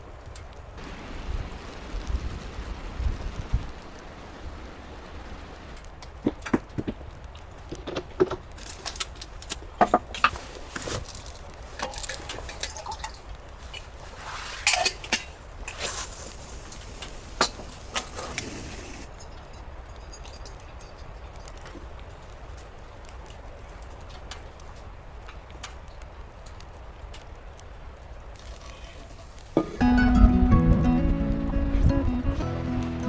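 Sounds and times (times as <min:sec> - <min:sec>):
steady low rumble: 0:00.7 - 0:06.1, 0:29.8 - 0:33.0.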